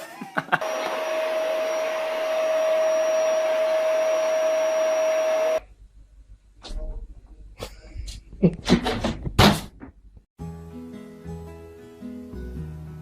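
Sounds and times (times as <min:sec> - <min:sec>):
appliance motor whirring: 0:00.6 - 0:05.6.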